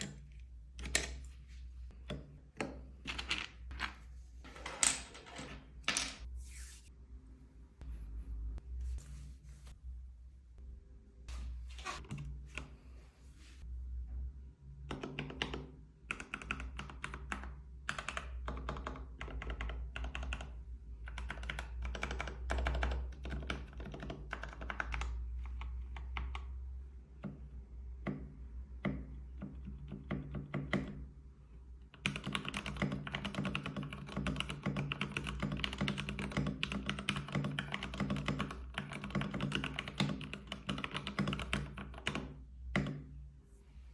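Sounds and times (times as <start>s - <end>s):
typing on mechanical keyboard: 14.9s - 26.5s, 31.9s - 43.0s.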